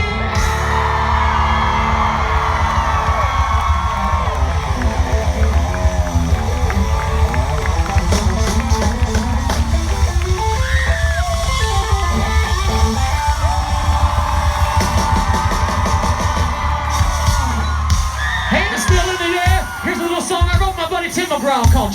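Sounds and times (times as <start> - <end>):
bass: 0.0 - 21.9
drums: 0.0 - 21.9
lead guitar: 0.0 - 21.9.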